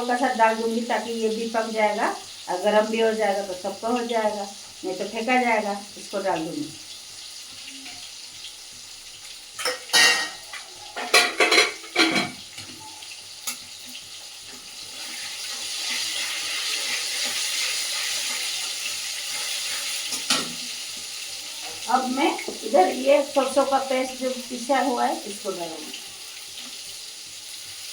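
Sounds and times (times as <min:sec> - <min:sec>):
pots and utensils clattering: 0:09.5 - 0:22.9.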